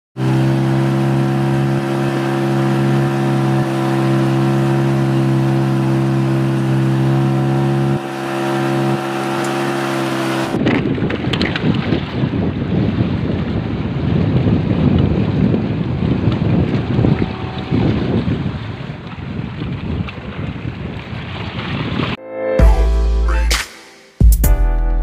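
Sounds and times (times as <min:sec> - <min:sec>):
steady motor drone: 0:00.2 - 0:10.8, 0:13.8 - 0:19.1
wind buffeting microphone: 0:01.0 - 0:22.2.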